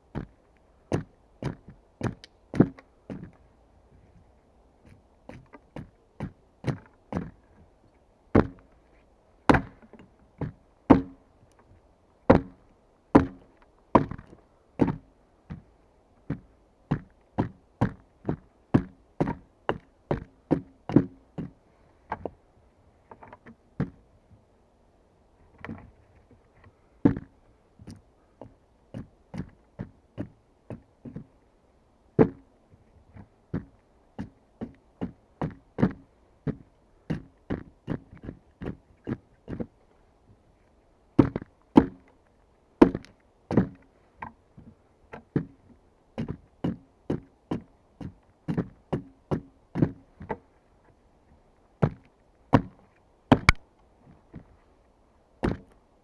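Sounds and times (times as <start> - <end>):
hand tool chopping wood: 0.9 - 3.4, 8.4 - 8.7, 9.5 - 11.2, 12.3 - 12.6, 13.2 - 15.6, 16.3 - 22.3, 27.0 - 27.3, 32.2 - 32.4, 33.6 - 39.7, 41.2 - 42.1, 42.8 - 44.4, 46.2 - 50.4, 51.8 - 53.6, 55.4 - 55.7.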